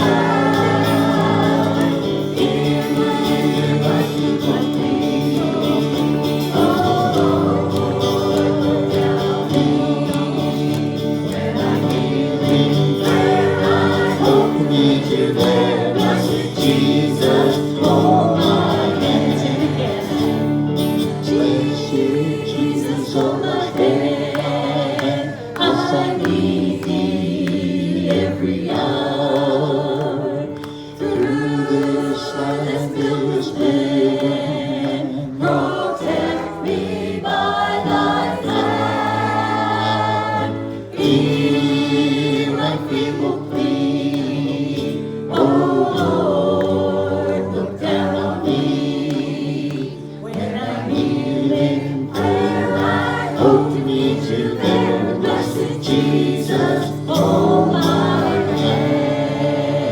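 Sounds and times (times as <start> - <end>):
group singing worship song: 0.0 - 59.9.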